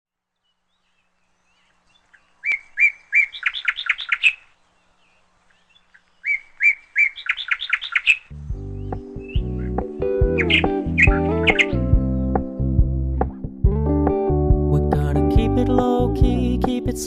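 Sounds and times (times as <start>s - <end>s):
songbird singing: 0.2s - 13.7s
music: 8.3s - 17.0s.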